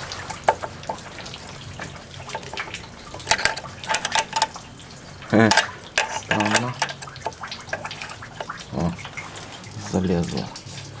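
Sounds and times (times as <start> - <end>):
light metallic clicks and knocks: 0.3 - 1.1, 1.8 - 4.6, 5.4 - 8.6.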